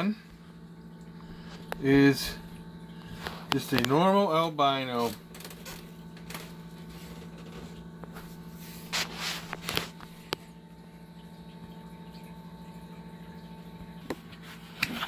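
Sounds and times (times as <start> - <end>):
low electrical hum: 0.0 - 15.0
handling noise rustling and scraping: 5.0 - 10.3.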